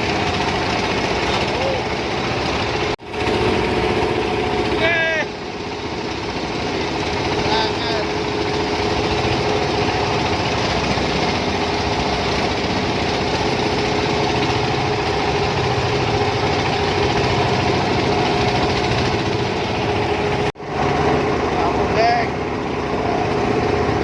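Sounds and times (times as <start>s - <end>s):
boat engine running: 0.0s - 24.0s.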